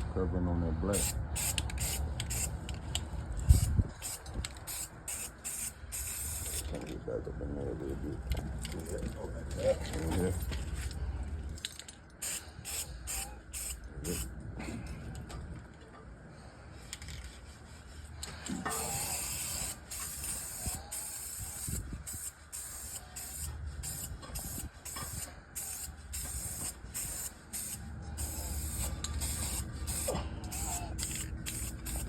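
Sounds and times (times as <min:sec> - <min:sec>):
spray paint can hissing: 0:01.0 - 0:02.6, 0:03.4 - 0:06.6, 0:12.2 - 0:14.3, 0:18.7 - 0:32.0.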